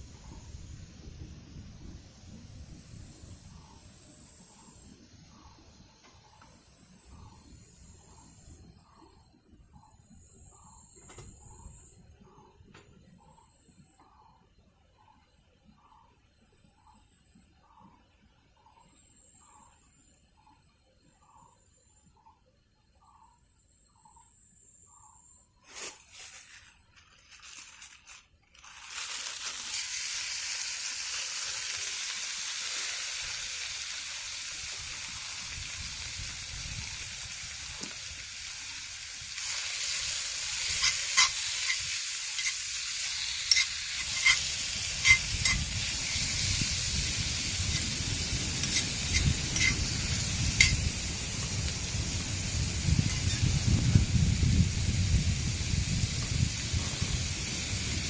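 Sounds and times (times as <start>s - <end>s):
food sizzling in a pan: 25.6s - 58.0s.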